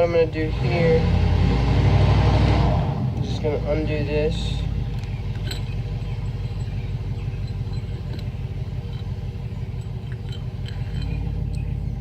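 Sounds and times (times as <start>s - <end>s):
truck engine idling: 3.0s - 12.0s.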